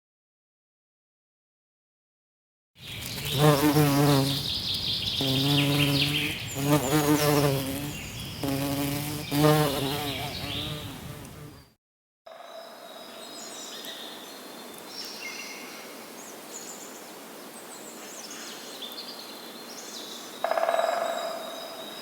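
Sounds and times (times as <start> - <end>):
small birds chirping: 2.8 - 11.8
flying insect buzzing: 3.0 - 11.7.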